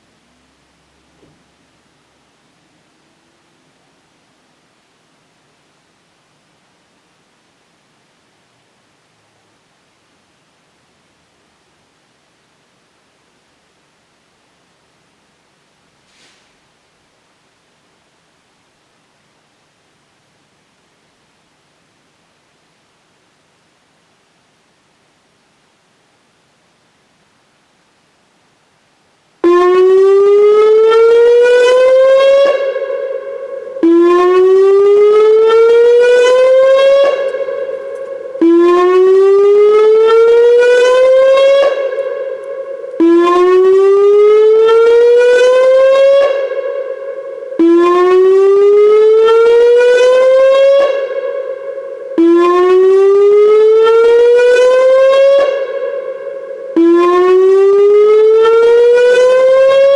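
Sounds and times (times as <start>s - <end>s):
warning siren whoop tone: 29.4s - 59.9s.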